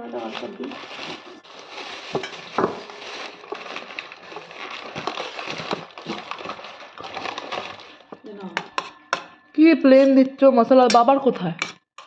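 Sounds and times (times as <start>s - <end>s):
food packaging crinkling: 0.0s - 9.0s
plates and spoons clinking: 2.0s - 9.3s.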